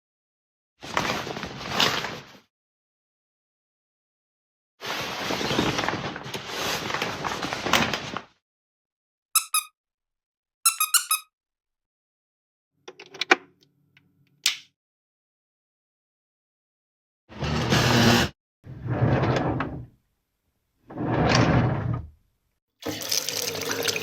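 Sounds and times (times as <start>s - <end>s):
rubber squeaky toy squeaking: 9.4s - 9.7s, 10.7s - 11.3s.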